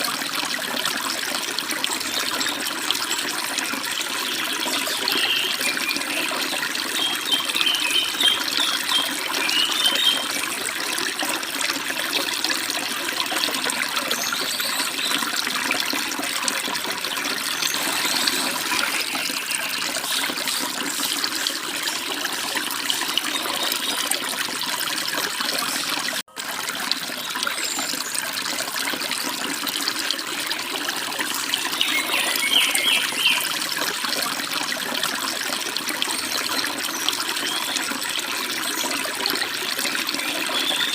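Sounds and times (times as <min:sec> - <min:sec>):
stream and small waterfall flowing: 0:00.0 - 0:40.9
birds chirping: 0:04.2 - 0:10.3, 0:31.7 - 0:33.4.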